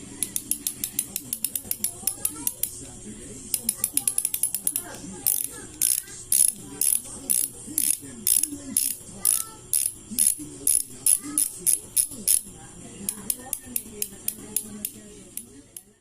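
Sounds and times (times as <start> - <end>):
bicycle freewheel ratchet clicking: 0.2 - 2.8, 3.5 - 12.4.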